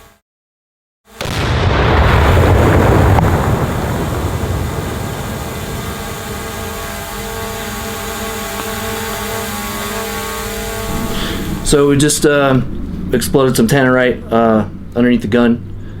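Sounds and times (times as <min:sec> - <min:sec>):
explosion roar and rumble: 0:01.2 - 0:08.6.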